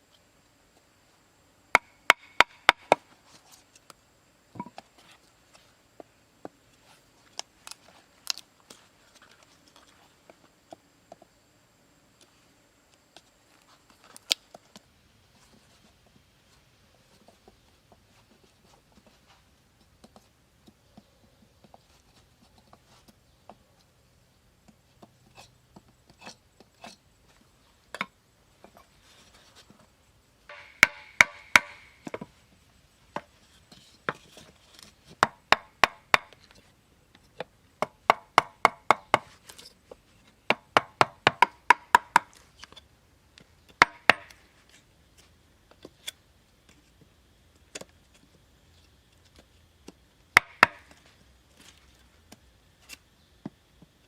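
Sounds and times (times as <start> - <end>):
wood being chopped: 1.8 - 3.1, 30.5 - 32.2, 35.2 - 36.4, 37.8 - 39.3, 40.5 - 42.4, 43.8 - 44.4, 50.4 - 51.0.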